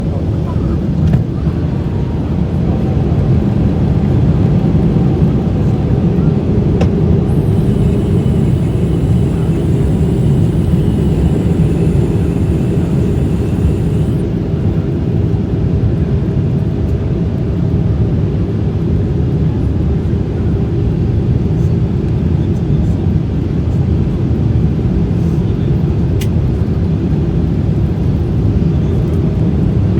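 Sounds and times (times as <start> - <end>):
airliner engines rumbling: 7.2 - 15.4
faint high whine: 7.3 - 15.3.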